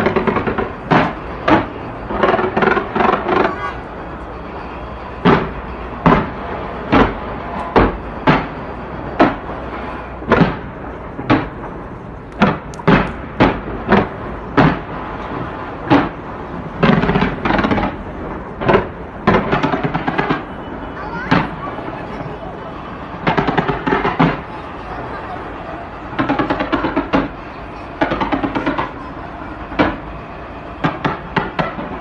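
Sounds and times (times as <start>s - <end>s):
fireworks bursting with bangs: 0.0s - 32.0s.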